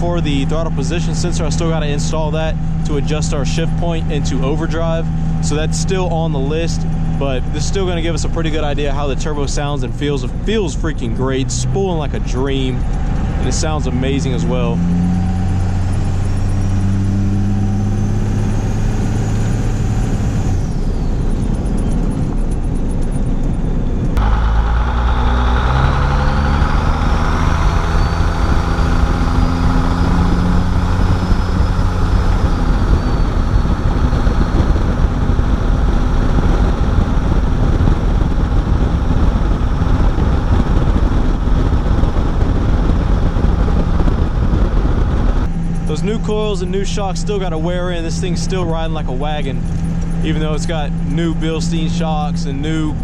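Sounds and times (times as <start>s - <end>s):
diesel engine revving: 0.0s - 53.0s
high turbo whistle: 14.4s - 22.2s, 24.2s - 36.2s.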